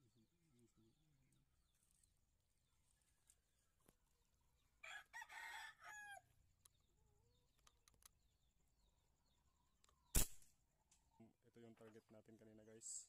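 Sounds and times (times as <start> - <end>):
rooster crowing: 4.8 - 6.3.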